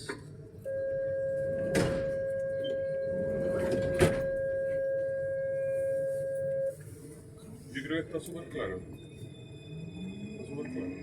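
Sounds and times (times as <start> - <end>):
train door warning beep: 0.7 - 6.8.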